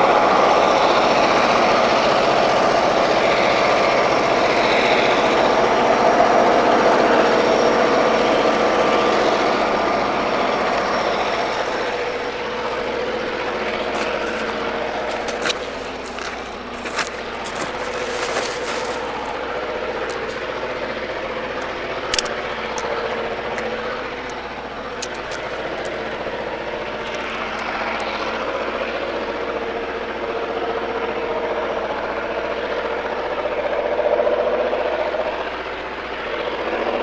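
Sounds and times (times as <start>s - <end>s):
train running by: 0.0s - 37.0s
sharp clicks: 21.6s - 26.1s.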